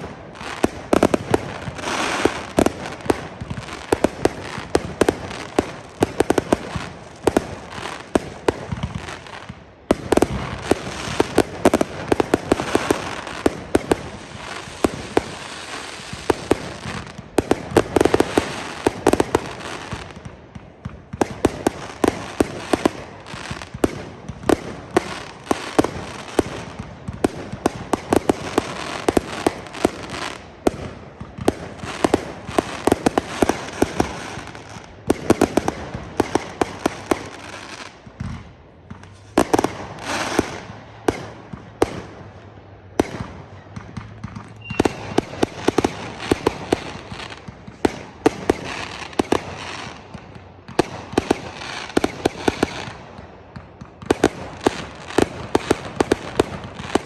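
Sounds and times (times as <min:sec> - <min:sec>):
fireworks banging and crackling: 0:00.0 - 0:57.0.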